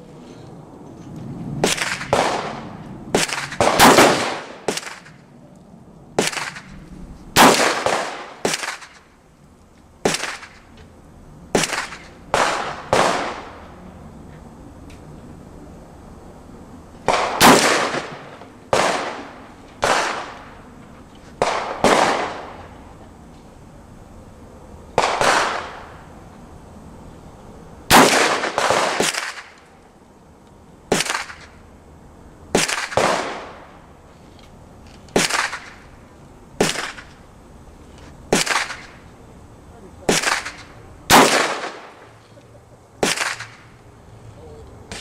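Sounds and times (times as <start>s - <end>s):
rifle shots with echo: 1.6s - 5.2s, 7.4s - 9.0s, 11.6s - 13.5s, 17.1s - 20.5s, 21.4s - 22.6s, 25.0s - 25.8s, 27.9s - 29.6s, 32.6s - 33.6s, 40.1s - 42.0s.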